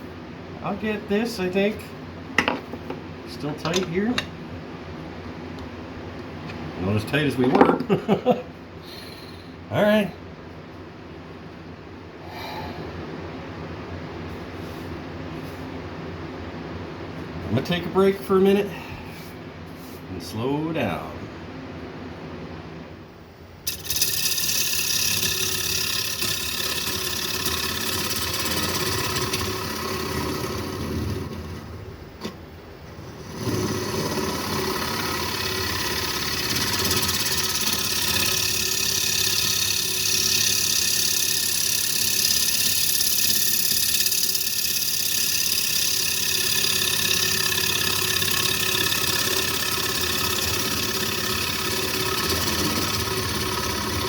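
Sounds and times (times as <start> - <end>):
tool cutting wood hiss: 23.6 - 32.4, 33.1 - 54.0
wood lathe motor hum: 23.6 - 54.0.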